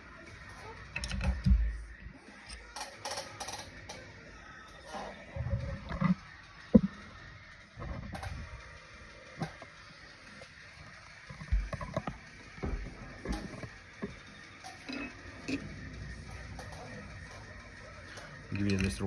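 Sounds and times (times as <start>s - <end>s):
hand tools clicking and knocking: 0.5s - 1.7s, 2.5s - 4.0s, 11.4s - 17.6s.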